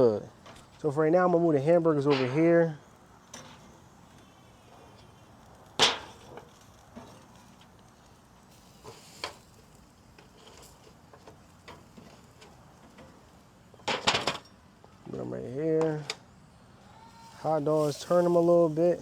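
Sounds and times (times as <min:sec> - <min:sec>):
metal utensil clacking on grill grate: 0:02.0 - 0:02.5, 0:10.1 - 0:13.2, 0:13.8 - 0:14.6.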